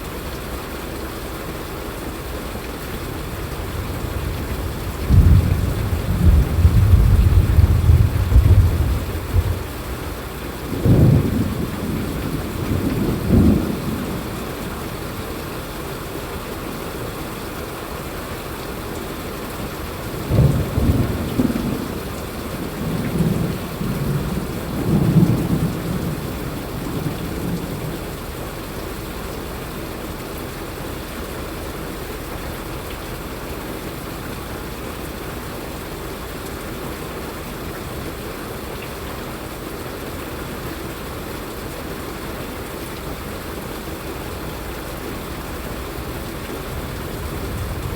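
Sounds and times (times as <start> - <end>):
rainfall hissing: 0.0 - 47.9
thunder rumbling: 3.0 - 15.1, 20.1 - 28.4, 45.2 - 47.9.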